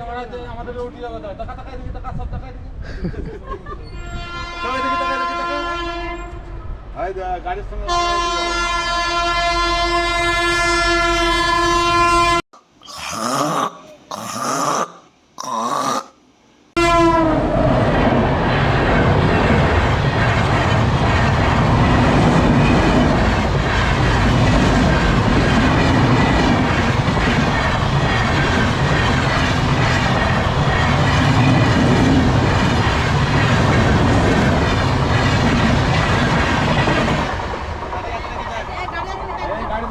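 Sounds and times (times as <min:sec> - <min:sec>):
train horn blast: 0:04.0 - 0:06.6, 0:07.9 - 0:12.4, 0:16.8 - 0:17.6
train coaches rumbling over rails: 0:16.9 - 0:39.9.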